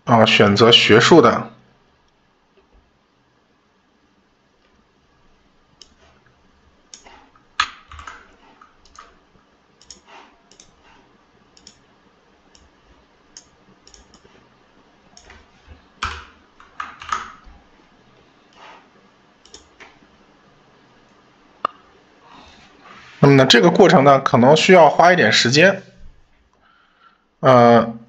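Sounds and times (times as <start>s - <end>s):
computer mouse and keyboard clicks: 5.8s - 6.2s, 6.9s - 9.2s, 9.8s - 11.8s, 12.5s - 14.4s, 15.1s - 17.5s, 19.4s - 20.0s.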